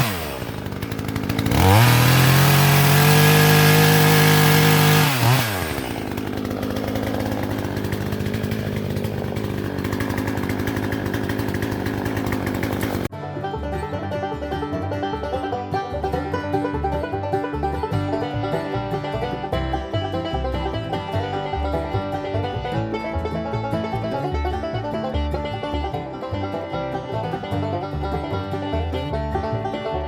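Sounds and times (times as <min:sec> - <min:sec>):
chainsaw revving and idling: 0:00.0 - 0:13.1
banjo music: 0:00.0 - 0:30.0.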